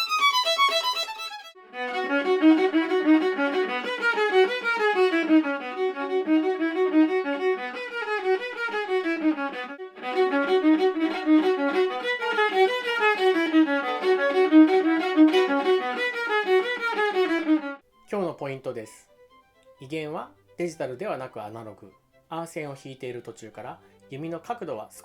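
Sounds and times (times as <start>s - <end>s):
solo violin playing quick notes: 0.0s - 17.8s.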